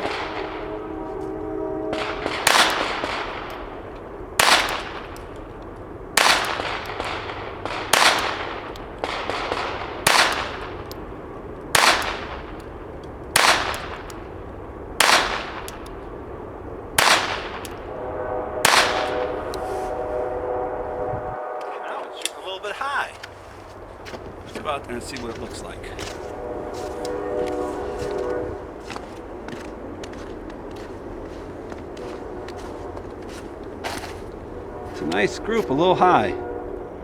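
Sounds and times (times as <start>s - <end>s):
pistol shots with echo: 0.0s - 0.8s, 1.9s - 5.6s, 6.2s - 14.4s, 15.0s - 16.1s, 17.0s - 17.9s, 18.6s - 19.4s.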